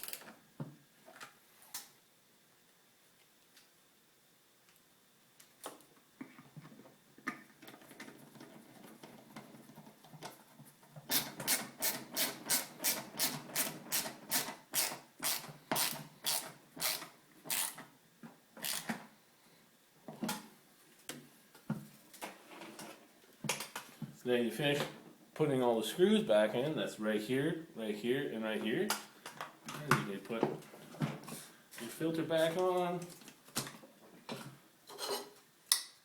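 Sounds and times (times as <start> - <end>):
hand tool clicking: 11.1 - 17.8.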